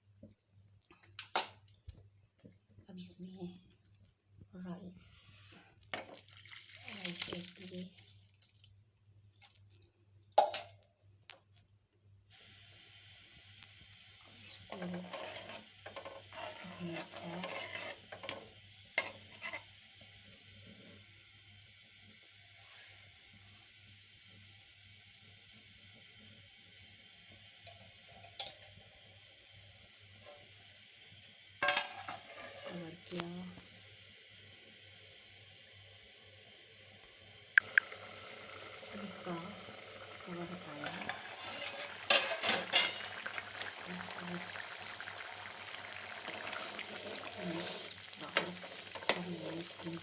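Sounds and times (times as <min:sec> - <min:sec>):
steady hiss: 0:04.4 - 0:05.9, 0:12.2 - 0:50.0
rice sizzling in a pan: 0:04.9 - 0:08.8, 0:09.4 - 0:10.8, 0:12.3 - 0:50.0
utensil clanking against pot: 0:40.9 - 0:43.1.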